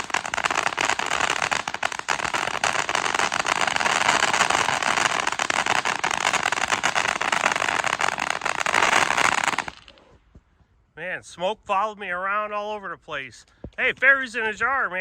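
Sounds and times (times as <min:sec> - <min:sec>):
fountain firework hissing and crackling: 0:00.0 - 0:09.9.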